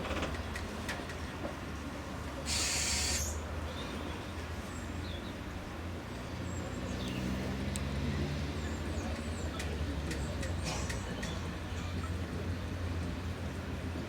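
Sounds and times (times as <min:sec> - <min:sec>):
funicular car mechanical hum: 0:00.0 - 0:14.0
short hiss: 0:02.5 - 0:03.4.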